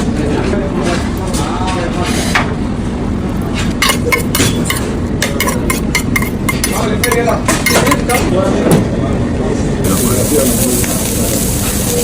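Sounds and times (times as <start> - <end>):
utensils clinking on dishes: 3.6 - 8.5.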